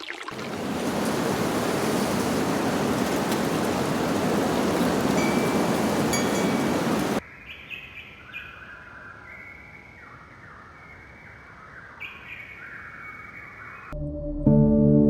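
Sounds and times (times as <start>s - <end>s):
loud steady rushing noise: 0.4s - 7.2s
birds singing: 0.4s - 14.0s
quiet outdoor ambience: 0.4s - 14.0s.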